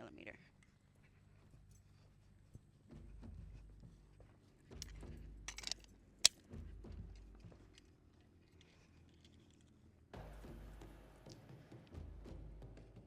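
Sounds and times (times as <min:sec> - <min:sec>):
pistol metallic clicks and rattles: 0:04.6 - 0:10.0.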